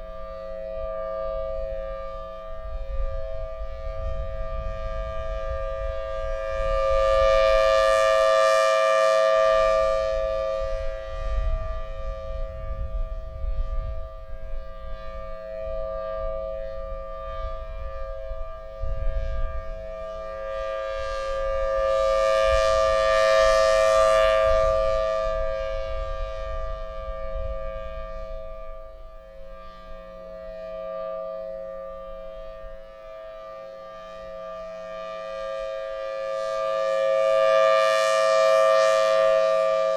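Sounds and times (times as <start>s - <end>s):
civil defense siren tone: 0.0s - 39.9s
wind rumble on microphone: 0.0s - 39.9s.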